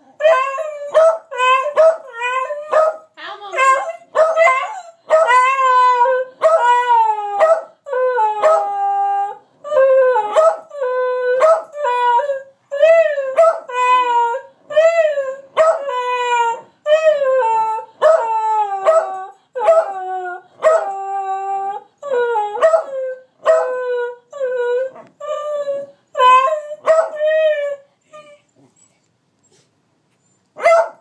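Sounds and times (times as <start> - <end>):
dogs howling: 3.6 - 27.8.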